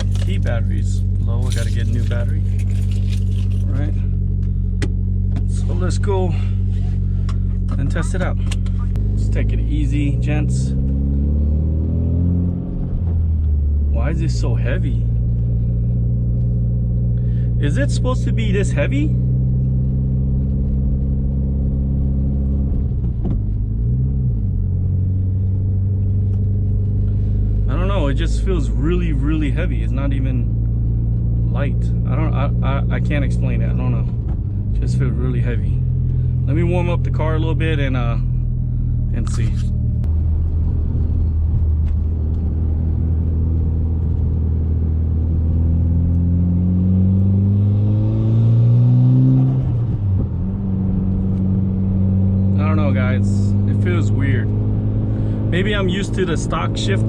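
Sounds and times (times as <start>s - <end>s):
car engine idling: 0.0s - 10.7s, 24.6s - 46.5s, 49.9s - 57.0s.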